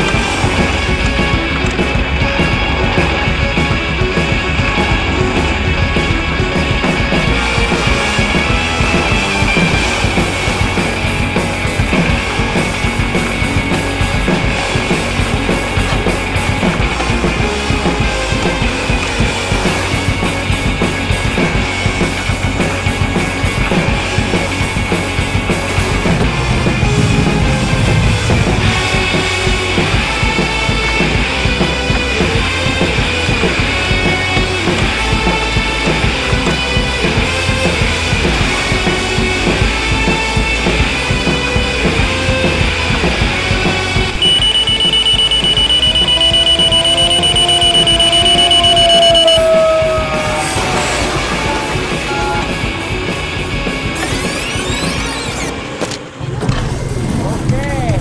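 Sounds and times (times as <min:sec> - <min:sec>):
rock music with drums: 0:00.0 - 0:55.5
steady high-pitched tone: 0:44.2 - 0:49.8.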